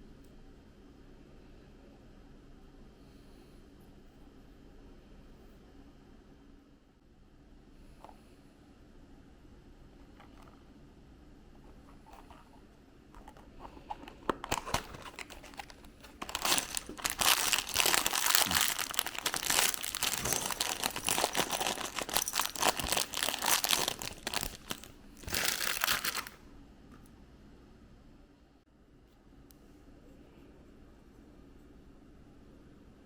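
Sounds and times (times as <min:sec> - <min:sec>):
packaging crinkling and tearing: 0:13.2 - 0:26.4.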